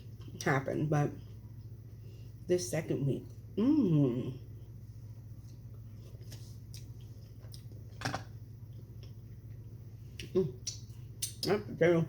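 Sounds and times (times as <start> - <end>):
steady low hum: 0.0 - 12.0
chewing and mouth clicks: 5.4 - 7.8.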